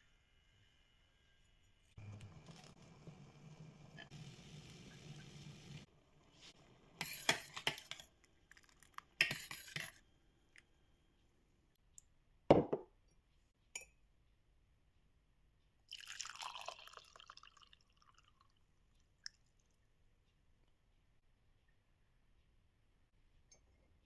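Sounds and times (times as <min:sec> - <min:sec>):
liquid pouring and dripping: 0:02.0 - 0:06.3, 0:08.2 - 0:09.2, 0:15.9 - 0:19.9.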